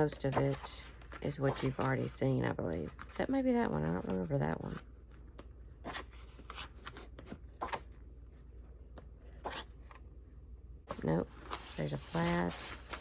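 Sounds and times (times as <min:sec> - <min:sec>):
low steady hum: 0:00.0 - 0:13.0
paper rustling: 0:10.9 - 0:13.0.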